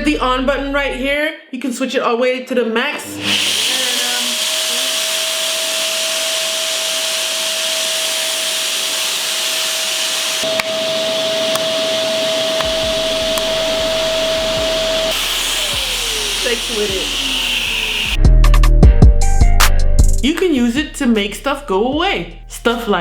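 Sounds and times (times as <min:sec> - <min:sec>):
vacuum cleaner click: 0:02.9 - 0:18.2
vacuum cleaner running: 0:02.9 - 0:18.2.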